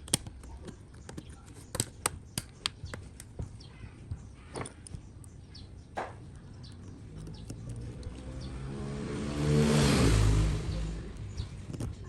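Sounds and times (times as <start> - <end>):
engine running: 7.0 - 12.0.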